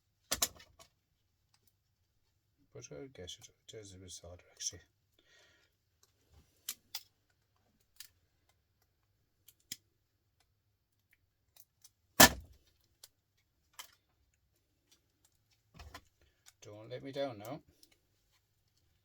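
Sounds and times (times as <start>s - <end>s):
loud clunk: 12.2s - 12.5s.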